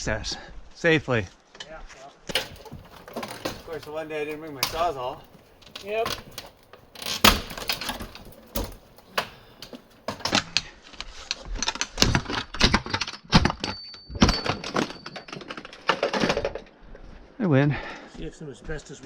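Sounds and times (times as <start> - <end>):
wood cracking and splintering: 2.3 - 10.5.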